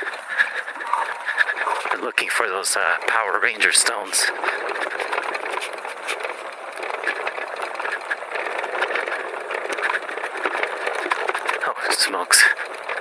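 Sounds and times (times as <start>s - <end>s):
tyres crunching on gravel: 0.0s - 13.0s
bike knocks and rattles: 2.7s - 11.7s, 12.4s - 13.0s.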